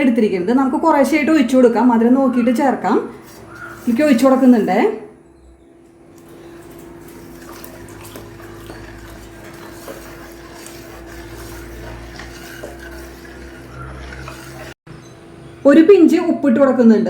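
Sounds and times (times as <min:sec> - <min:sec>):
steady low hum: 0:00.1 - 0:15.7
spoon scraping and clinking pot: 0:03.1 - 0:04.8, 0:06.2 - 0:14.8
syrup pouring into pot: 0:07.2 - 0:14.7.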